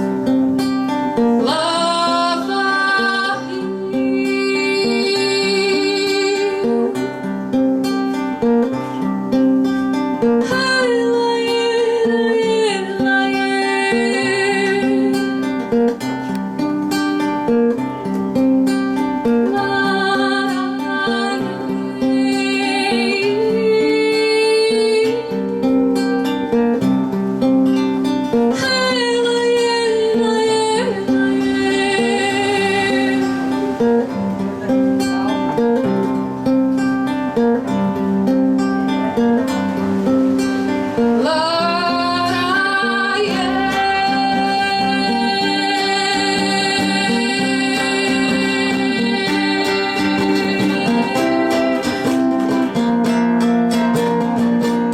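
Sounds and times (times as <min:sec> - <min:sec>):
guitar strumming chords: 0:00.0 - 0:54.9.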